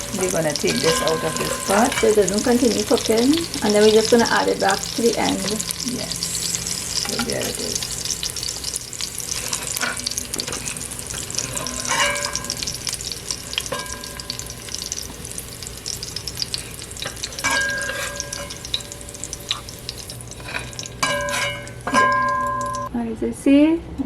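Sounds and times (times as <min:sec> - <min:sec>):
pot ringing: 0:00.0 - 0:08.4, 0:09.3 - 0:22.9
oil sizzling in a pot: 0:00.0 - 0:22.9
metal spoon scraping a pot: 0:00.6 - 0:04.2, 0:09.3 - 0:12.7, 0:16.5 - 0:22.9.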